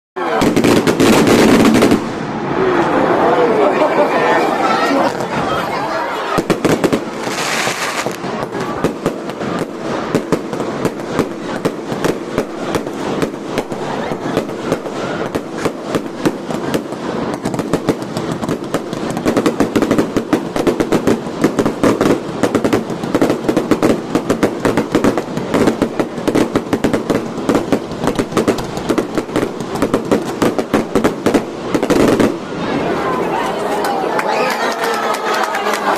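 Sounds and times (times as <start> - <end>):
fireworks crackling: 0.2 - 35.9
fireworks hiss: 6.4 - 32.5.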